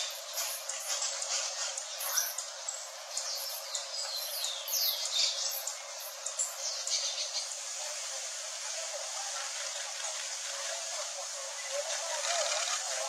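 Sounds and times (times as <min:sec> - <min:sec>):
songbirds chirping and whistling: 0:00.0 - 0:07.8
steady hiss: 0:00.0 - 0:13.0.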